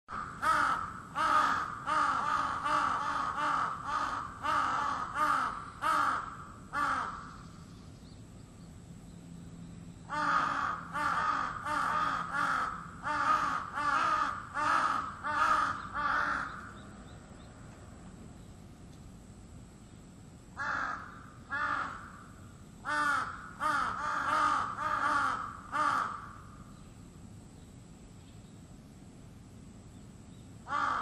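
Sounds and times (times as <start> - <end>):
crow cawing: 0.1 - 7.4, 10.1 - 16.8, 20.6 - 26.7, 30.6 - 31.0.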